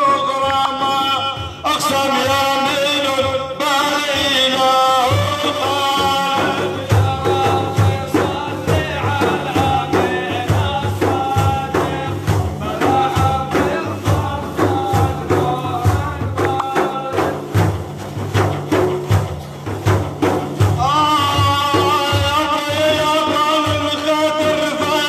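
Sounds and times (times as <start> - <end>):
devotional song melody: 0.0 - 18.6
hand drums and tambourine: 0.0 - 25.0.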